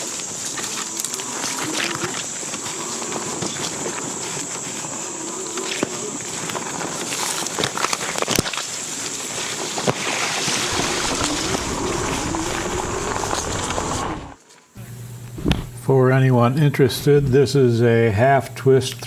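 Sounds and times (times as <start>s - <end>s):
tyre rumble on pavement: 0.0s - 14.4s
electric motor whine: 9.6s - 15.8s
wind rush: 10.6s - 14.4s.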